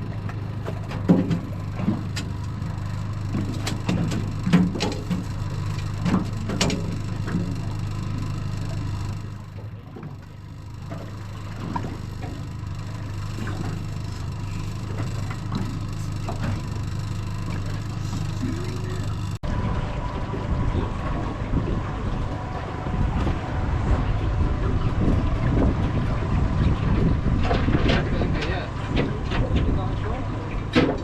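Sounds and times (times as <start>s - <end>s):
outboard motor running: 0.0s - 31.0s
knocks on boat: 0.6s - 2.3s, 30.7s - 31.0s.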